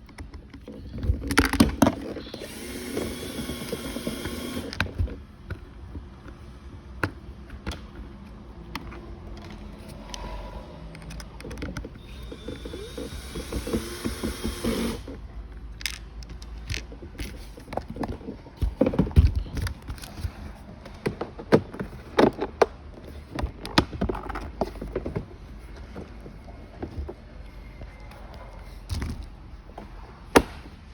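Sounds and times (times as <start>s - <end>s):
plastic parts clicking and knocking: 0.0s - 10.2s, 10.8s - 27.2s
power screwdriver whirring: 1.9s - 4.9s, 12.0s - 15.2s.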